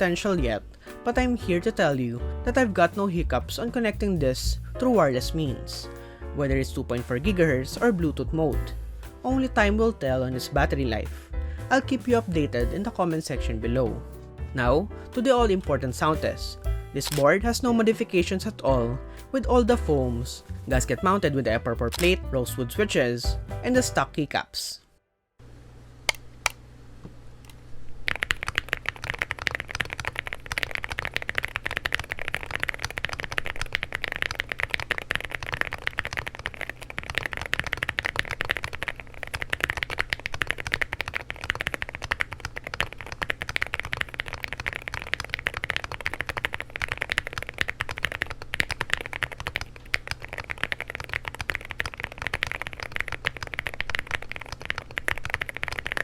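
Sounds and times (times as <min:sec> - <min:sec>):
mechanical keyboard typing: 0:28.1 - 0:56.0.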